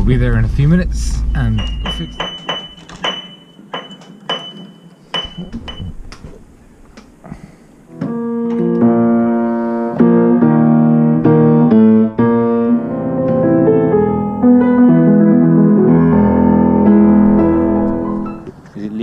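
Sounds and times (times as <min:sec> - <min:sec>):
piano playing slow chords: 0:07.8 - 0:18.6.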